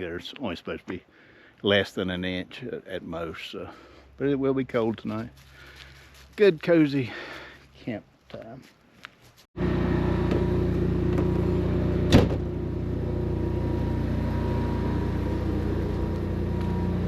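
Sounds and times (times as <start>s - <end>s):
generator humming: 9.6s - 17.0s.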